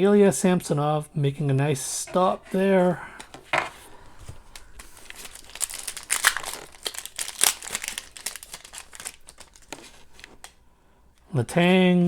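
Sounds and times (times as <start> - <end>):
foil wrapper crinkling and tearing: 4.3 - 10.6.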